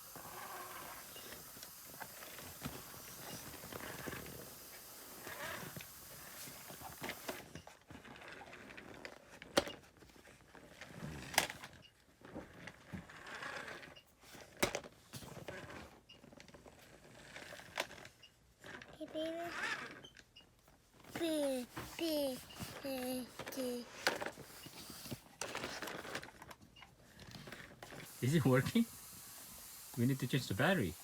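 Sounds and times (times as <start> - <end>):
toy clicks: 21.2 - 24.3.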